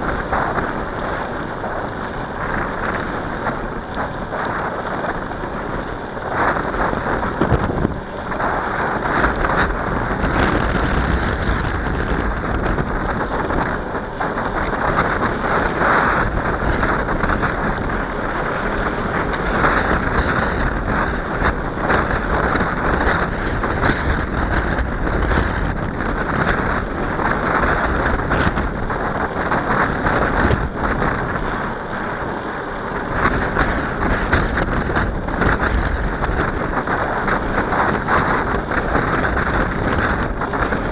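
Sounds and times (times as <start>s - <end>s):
wind rushing over microphone: 0.0s - 40.9s.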